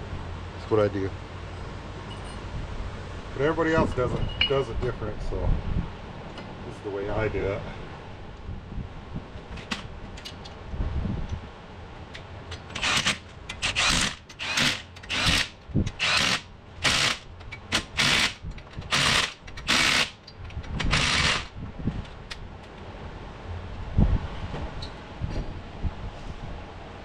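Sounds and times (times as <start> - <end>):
impact wrench bursts: 12.5 - 21.5.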